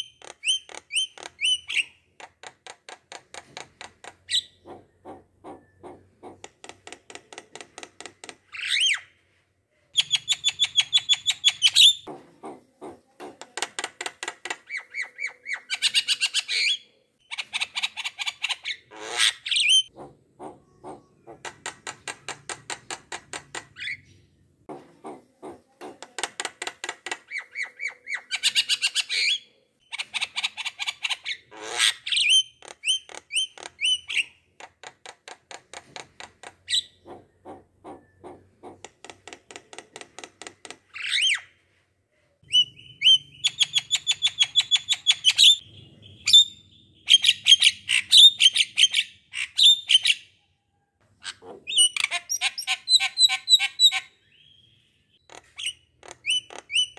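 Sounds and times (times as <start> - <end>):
bird trilling and chattering: 0.0 - 9.0, 10.0 - 41.5, 42.4 - 50.4, 51.2 - 56.9.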